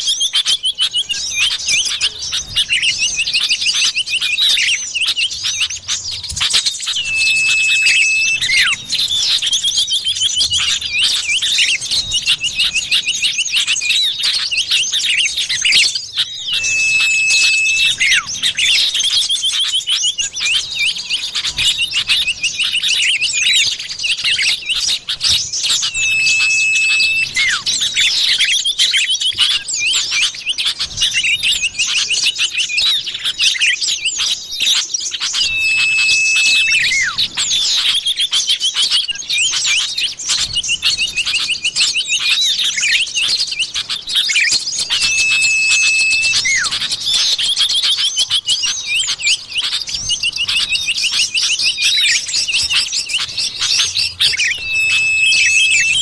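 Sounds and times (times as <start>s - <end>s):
small birds twittering: 0.0s - 56.0s
level drawn-out whistle: 6.5s - 13.7s, 16.2s - 19.2s, 25.2s - 28.6s, 35.3s - 38.4s, 44.3s - 47.8s, 49.9s - 56.0s.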